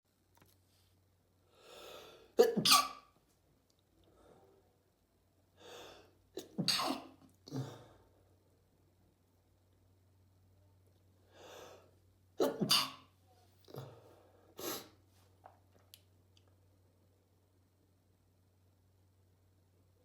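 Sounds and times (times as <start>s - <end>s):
person sneezing: 2.4s - 3.0s, 6.4s - 7.9s, 12.4s - 13.1s, 14.6s - 15.0s.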